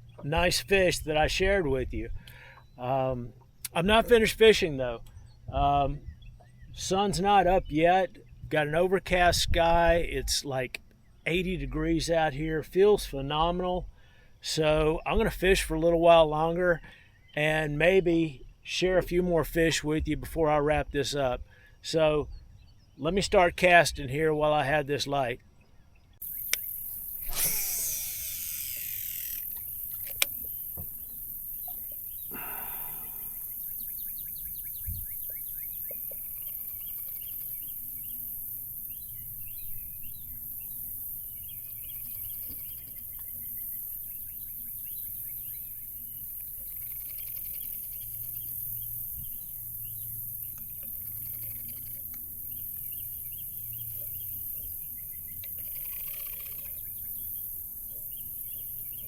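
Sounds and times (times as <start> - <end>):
birds singing trills: 0.0 - 19.6, 21.2 - 59.0
fishing reel spool whirring: 26.2 - 53.7, 54.7 - 58.9
high insect hiss: 26.2 - 59.0
sharp click: 26.4 - 30.9.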